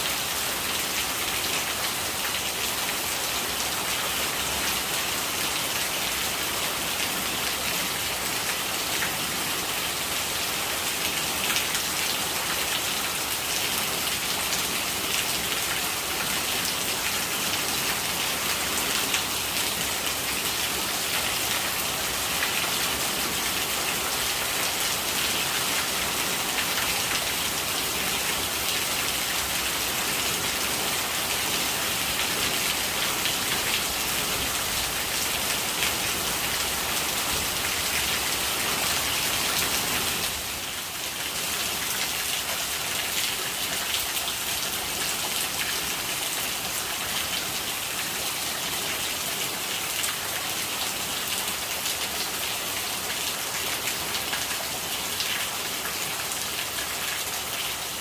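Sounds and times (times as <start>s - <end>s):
rain pattering on a surface: 0.0s - 58.0s.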